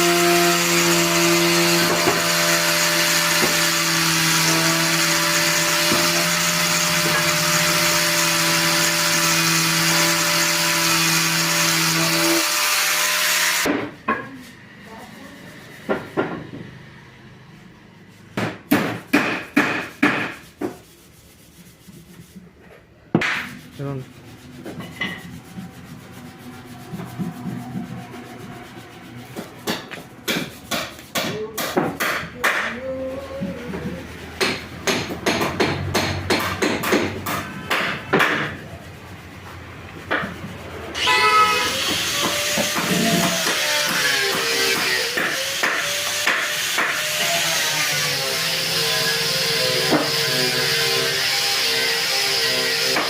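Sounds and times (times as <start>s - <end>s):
hammer striking wood: 1.2s - 3.8s, 5.5s - 8.2s, 13.6s - 14.3s, 18.3s - 20.8s, 23.2s - 23.5s, 29.4s - 32.8s, 34.4s - 38.6s, 41.8s - 47.2s, 49.9s - 50.2s, 52.8s - 53.0s.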